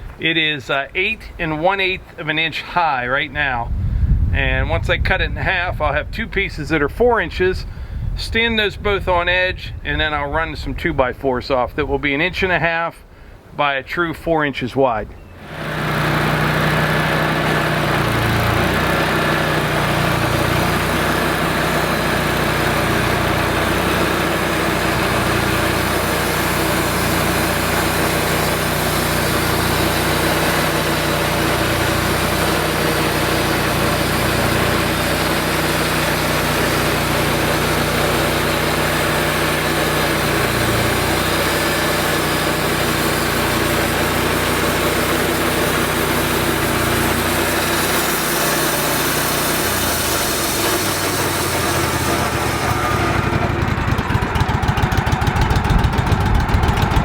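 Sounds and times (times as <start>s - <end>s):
band sawmill engine running: 15.3s - 57.0s.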